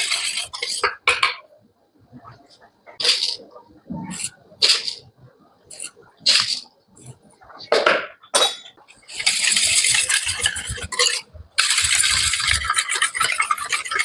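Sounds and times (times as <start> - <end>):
metal utensils clinking on a bowl: 8.3 - 14.0.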